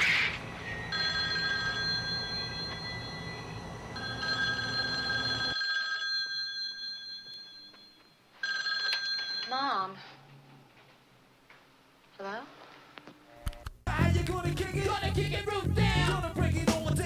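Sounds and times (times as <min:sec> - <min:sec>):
telephone ringing: 0:00.6 - 0:10.1.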